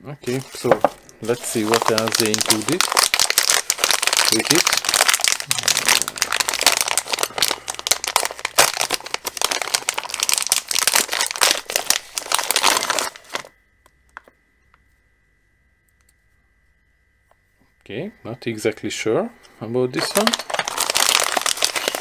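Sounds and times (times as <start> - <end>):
packaging crinkling and rustling: 0.2 - 13.5, 20.0 - 22.0.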